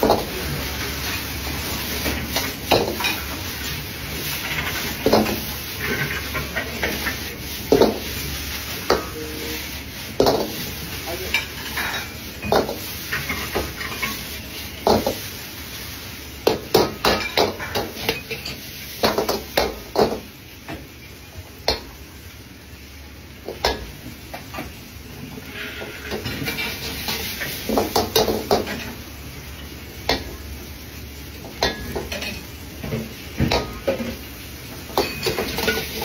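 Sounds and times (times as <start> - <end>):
dishes and utensils clinking: 2.0 - 3.4, 4.3 - 8.0, 10.2 - 15.2, 16.7 - 20.2, 31.5 - 34.2, 34.9 - 36.0.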